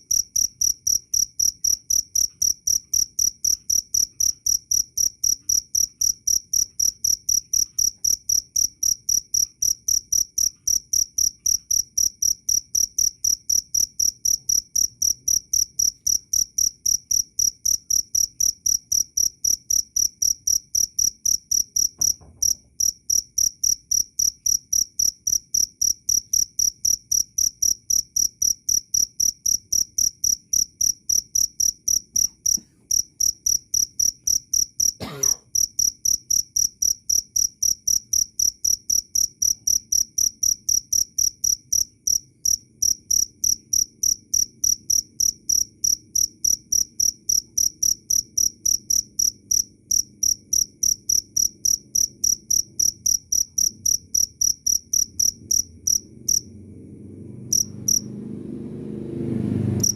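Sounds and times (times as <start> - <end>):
cricket chirping: 0.0 - 58.2, 59.6 - 59.9
faint low knock: 22.0 - 22.8.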